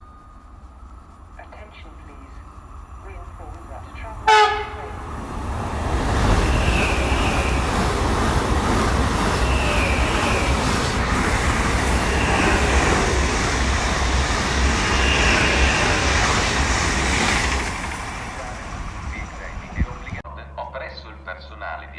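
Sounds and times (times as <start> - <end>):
train passing close by: 0.0 - 20.2
wheel squeals: 6.0 - 17.8.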